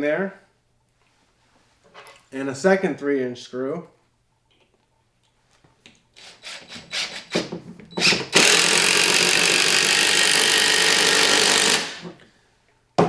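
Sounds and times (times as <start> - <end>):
drill clicks: 6.2 - 12.2
power drill driving a screw: 6.2 - 12.2.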